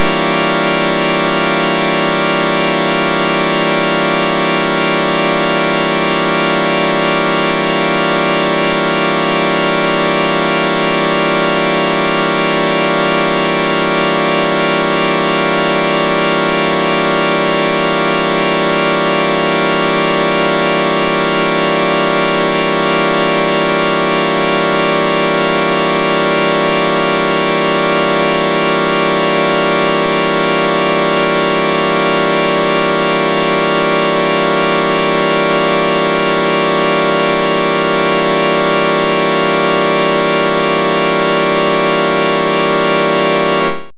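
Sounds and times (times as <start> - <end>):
electronic droning chord: 0.0 - 43.9.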